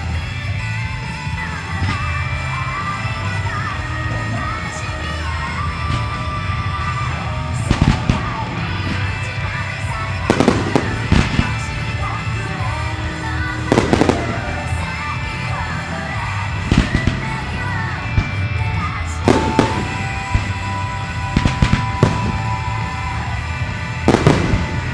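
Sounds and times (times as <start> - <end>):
music: 0.0 - 24.9
firework bangs: 9.9 - 18.4, 19.2 - 24.9.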